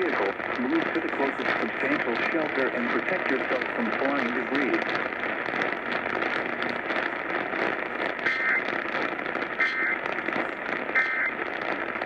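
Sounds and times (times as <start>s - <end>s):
radio static hiss and crackle: 0.0s - 12.0s
two-tone digital data squawk: 8.2s - 8.7s, 9.6s - 10.0s, 10.9s - 11.4s.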